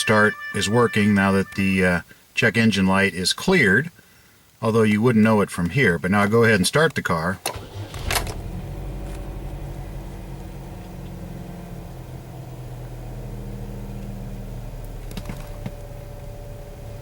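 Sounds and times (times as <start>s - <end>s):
car engine idling: 7.6s - 17.0s.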